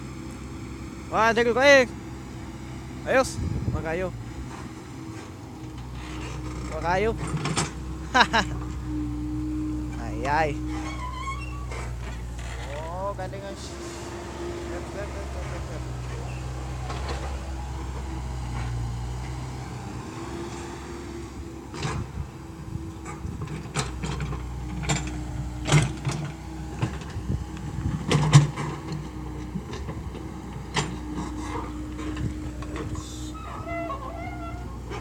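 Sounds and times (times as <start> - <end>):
excavator engine humming: 0.0 - 35.0.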